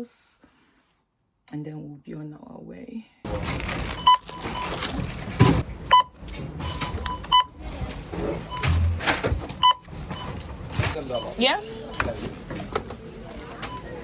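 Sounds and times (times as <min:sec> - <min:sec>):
busy background noise: 0:03.3 - 0:14.0
short electronic beeps: 0:09.6 - 0:10.4.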